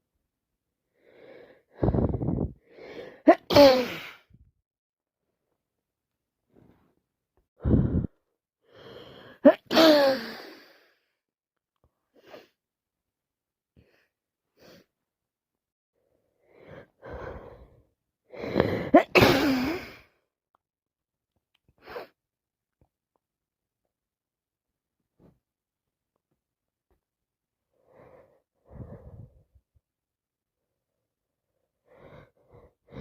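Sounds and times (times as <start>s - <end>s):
woman sneezing: 3.3s - 4.2s, 9.4s - 10.4s, 18.8s - 19.9s
gasping breaths: 7.6s - 9.4s.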